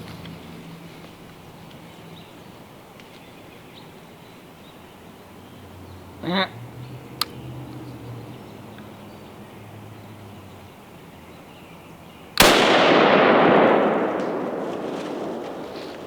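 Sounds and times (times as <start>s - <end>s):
rifle shot echoing: 12.4s - 16.0s.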